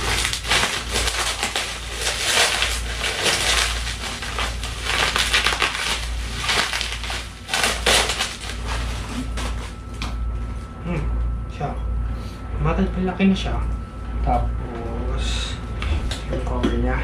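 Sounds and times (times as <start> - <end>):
packaging crinkling and tearing: 0.0 - 10.1.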